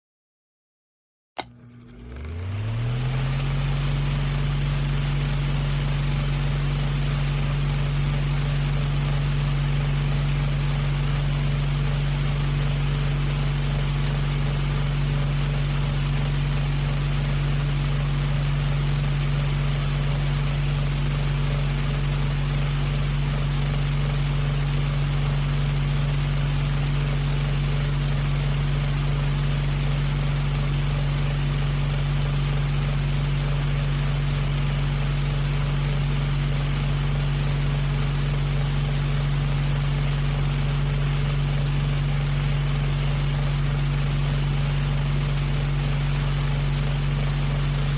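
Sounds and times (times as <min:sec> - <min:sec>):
electric fan running: 0:01.4 - 0:47.9.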